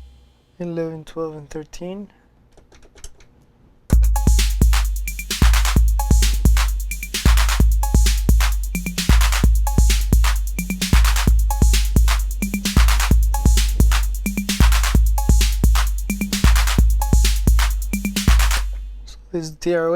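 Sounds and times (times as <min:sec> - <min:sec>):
bright hi-hat hits: 0:00.0 - 0:00.6, 0:04.0 - 0:19.1
high tom notes: 0:00.0 - 0:00.6, 0:04.0 - 0:19.1
deep bass drum booms: 0:04.0 - 0:19.1.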